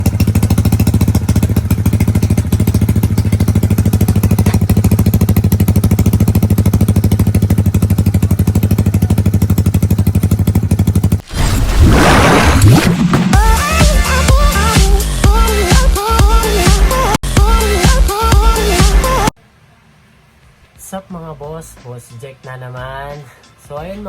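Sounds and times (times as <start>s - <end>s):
scooter engine idling: 0.0s - 11.2s.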